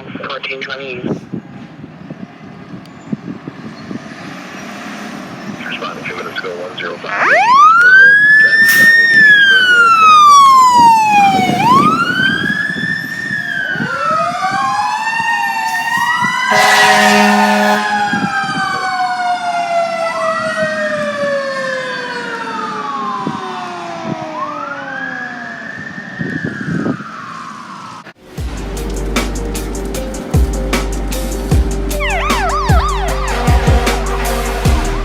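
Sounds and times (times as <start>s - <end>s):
fire engine siren wailing: 1.5s - 28.2s, 31.9s - 35.0s
falling siren tone: 7.0s - 28.2s, 32.0s - 33.9s
air horn blast: 15.6s - 18.3s, 32.0s - 35.0s.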